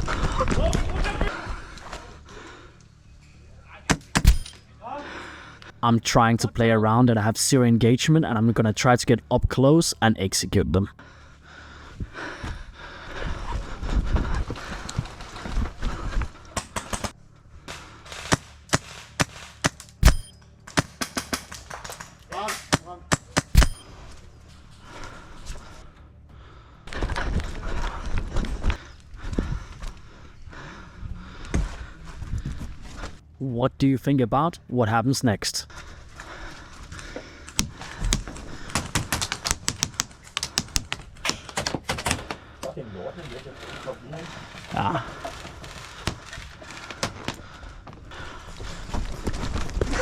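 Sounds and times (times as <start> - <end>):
airsoft guns firing: 16.6 - 23.8.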